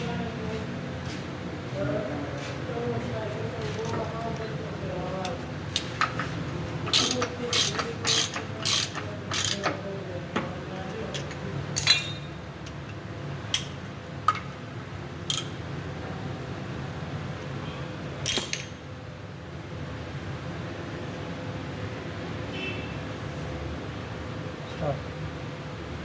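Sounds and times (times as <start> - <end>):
hand ratchet clicking: 5.2 - 9.8, 10.8 - 12.9, 15.3 - 15.5.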